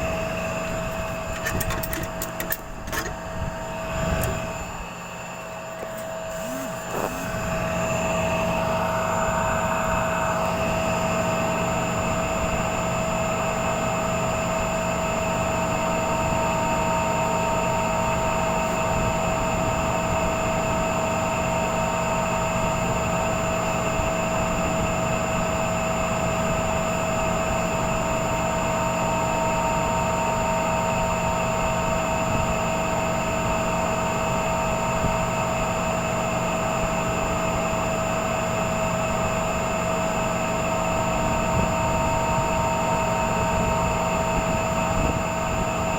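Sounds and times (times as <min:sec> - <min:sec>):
electric motor whine and hum: 0:00.0 - 0:22.4.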